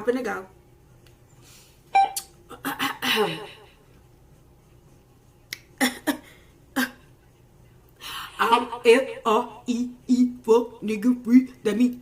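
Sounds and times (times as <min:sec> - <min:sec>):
sharp snaps: 0:05.5 - 0:05.8.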